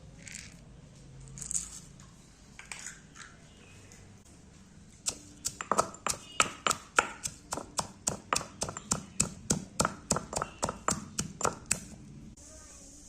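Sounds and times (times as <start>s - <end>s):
kitchen tool pounding: 5.0s - 12.0s.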